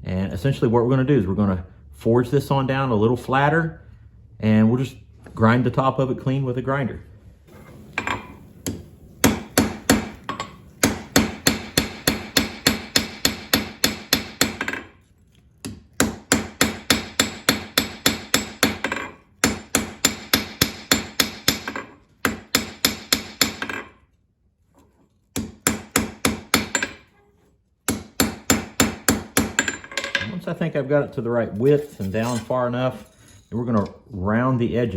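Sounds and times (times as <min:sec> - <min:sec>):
hammer striking metal on anvil: 0:08.0 - 0:14.9, 0:16.0 - 0:23.9, 0:25.4 - 0:27.1, 0:27.9 - 0:30.3.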